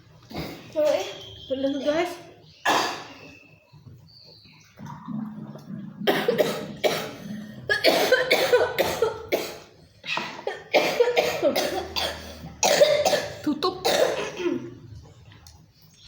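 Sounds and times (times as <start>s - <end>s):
woman coughing harshly: 2.6s - 3.2s, 6.1s - 14.7s.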